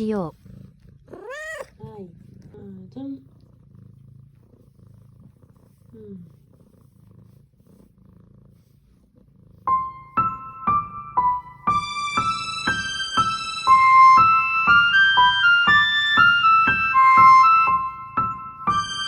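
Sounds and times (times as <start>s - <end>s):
electric piano melody: 9.7s - 19.0s.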